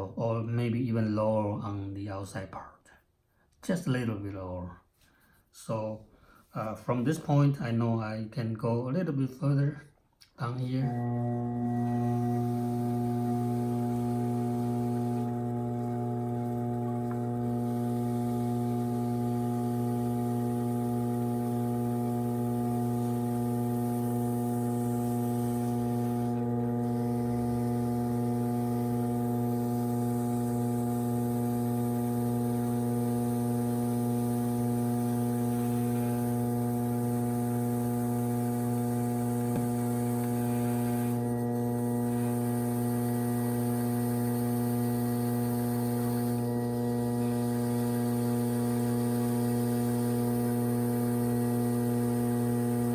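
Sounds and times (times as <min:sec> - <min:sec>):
potter's wheel motor humming: 0:10.8 - 0:52.9.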